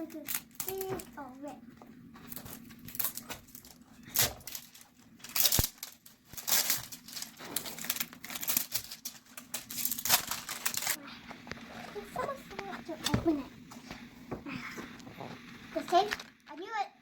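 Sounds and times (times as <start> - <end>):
packaging crinkling and tearing: 0.0 - 1.2, 2.2 - 11.7, 15.8 - 16.6.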